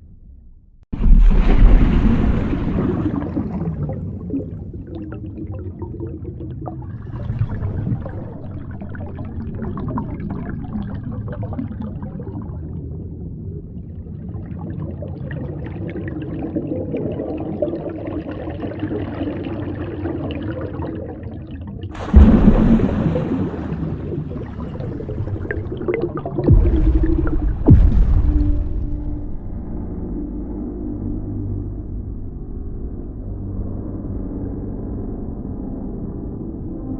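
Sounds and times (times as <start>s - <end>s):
muffled underwater rush: 0.9s - 31.0s
sudden loud noise burst: 22.0s - 25.4s, 26.5s - 29.8s.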